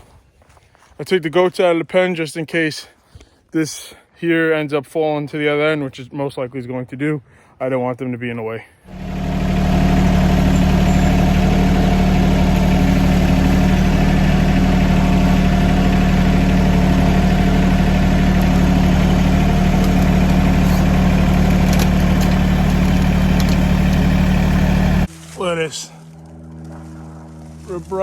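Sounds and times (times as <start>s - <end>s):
diesel tractor engine running: 8.9s - 25.1s.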